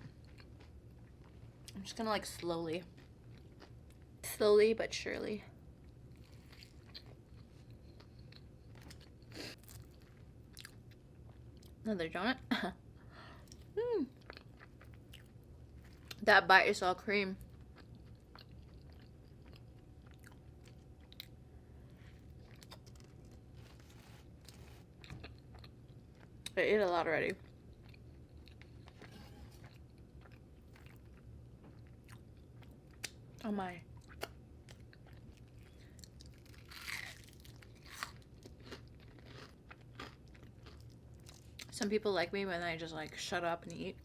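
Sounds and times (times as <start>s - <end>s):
chewing: 14.2s - 16.2s, 17.4s - 21.4s, 22.1s - 26.4s, 27.4s - 29.0s, 29.6s - 33.2s, 34.0s - 41.7s.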